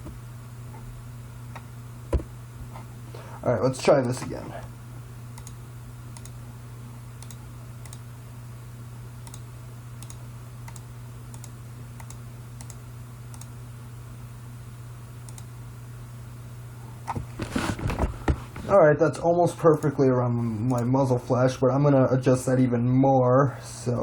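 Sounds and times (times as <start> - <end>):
steady low hum: 0.0 - 24.0
computer mouse clicking: 5.4 - 5.6, 6.2 - 6.4, 7.2 - 8.0, 9.2 - 9.4, 10.0 - 13.5, 15.2 - 15.5.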